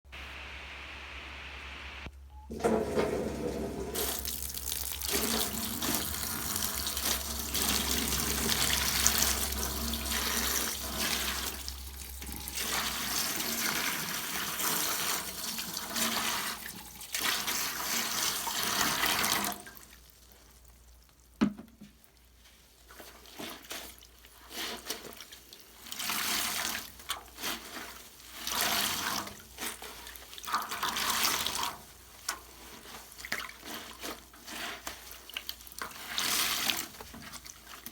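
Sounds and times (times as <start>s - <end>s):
tap running into a bathtub: 21.4s - 22.0s.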